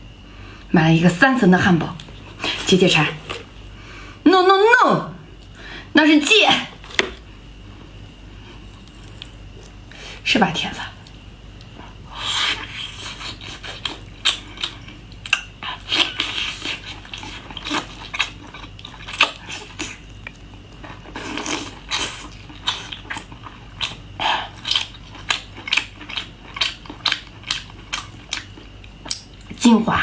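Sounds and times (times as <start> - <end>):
person chewing crunchy food: 8.4 - 10.2, 11.0 - 29.6.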